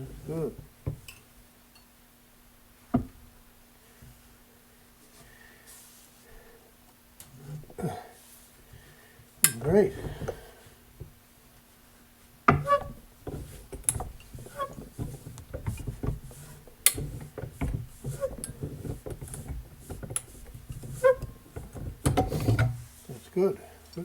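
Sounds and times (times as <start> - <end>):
metal rattles and scraping: 12.6 - 22.9.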